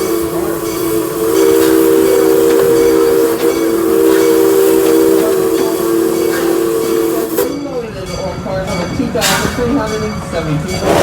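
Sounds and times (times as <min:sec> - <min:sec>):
steam locomotive whistle: 0:00.0 - 0:07.8
steam hissing: 0:00.0 - 0:08.0, 0:10.7 - 0:11.0.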